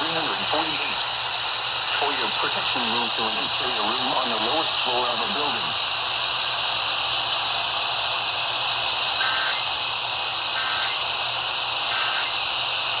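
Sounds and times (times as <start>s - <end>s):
radio static hiss: 0.0s - 7.1s, 8.4s - 13.0s
emergency alert data bursts: 1.8s - 5.3s, 9.2s - 9.8s, 10.5s - 11.2s, 11.8s - 12.5s.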